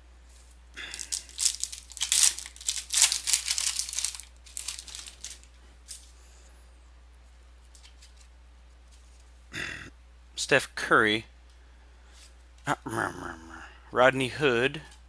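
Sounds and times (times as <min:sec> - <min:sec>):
foil wrapper tearing and crinkling: 0:00.8 - 0:06.0.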